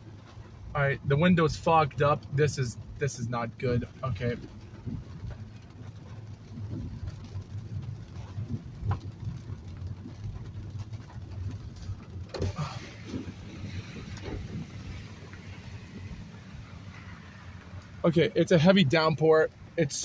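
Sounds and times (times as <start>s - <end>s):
car rumble: 0.0s - 20.0s
rain on car body: 0.0s - 20.0s.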